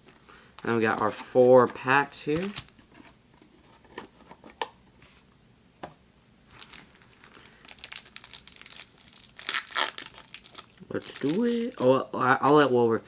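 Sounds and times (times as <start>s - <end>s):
foil wrapper crinkling: 2.3s - 2.8s, 6.5s - 12.0s.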